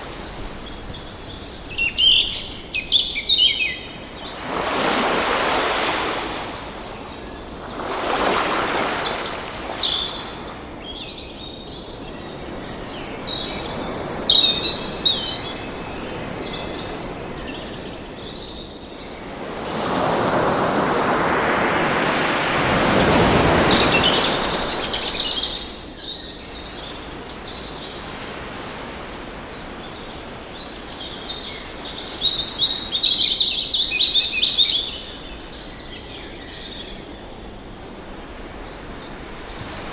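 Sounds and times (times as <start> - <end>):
birds chirping and trilling: 0.0 - 39.9
ocean waves: 3.7 - 30.9, 37.4 - 39.9.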